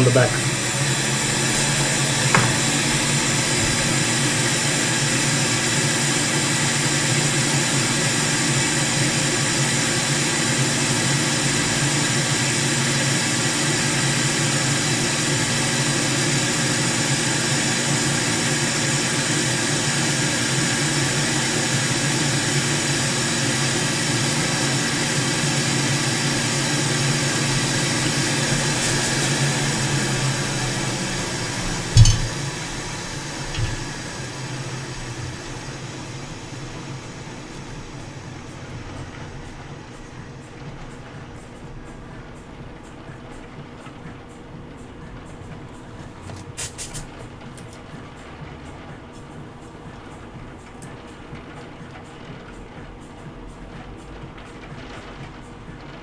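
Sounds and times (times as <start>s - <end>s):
small blower fan whirring: 0.0s - 56.0s.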